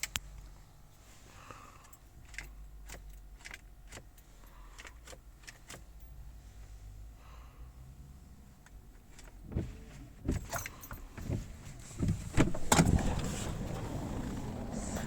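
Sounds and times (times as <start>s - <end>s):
car keys jangling: 1.8s - 6.3s, 9.0s - 15.0s.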